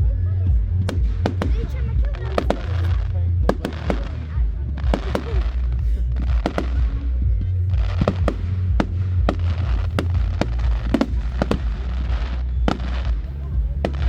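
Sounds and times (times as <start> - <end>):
firework crackling: 0.8 - 14.0
firework shells bursting: 7.7 - 14.0.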